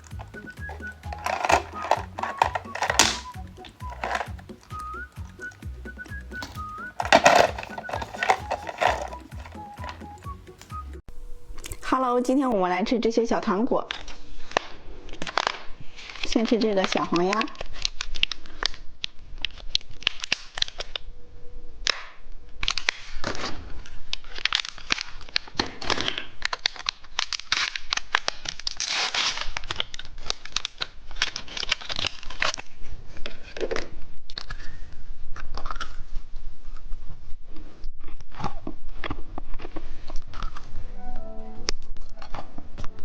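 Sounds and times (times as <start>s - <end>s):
candy wrapper crinkling: 0.0s - 4.6s, 6.4s - 10.2s
candy being crunched and chewed: 0.0s - 5.0s, 6.4s - 10.2s.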